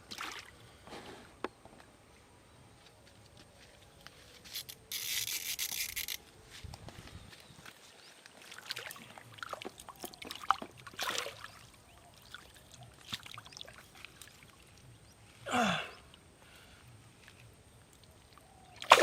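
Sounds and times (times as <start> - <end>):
trickling water: 8.2 - 15.1.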